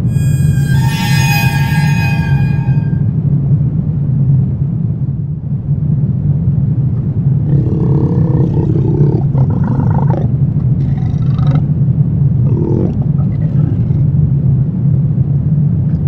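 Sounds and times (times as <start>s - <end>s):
low rumbling drone: 0.0s - 3.2s
deep creature growl: 7.4s - 11.7s, 12.4s - 14.1s.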